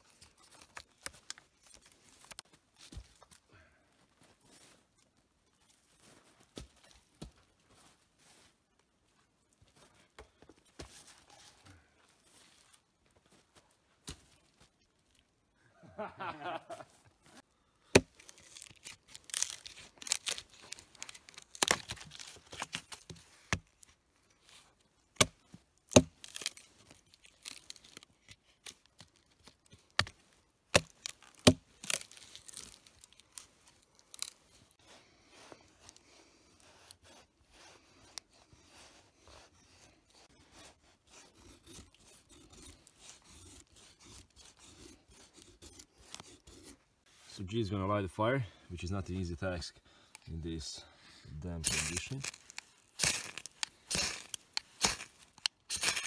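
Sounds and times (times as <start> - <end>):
wood knocking and cracking: 17.9 - 23.8, 30.7 - 33.1.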